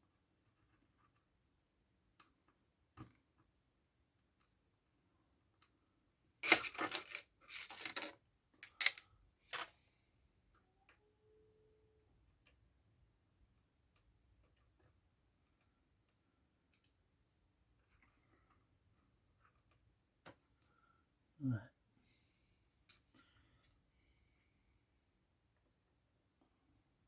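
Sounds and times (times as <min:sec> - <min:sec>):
rustling and scraping: 0:06.4 - 0:09.8.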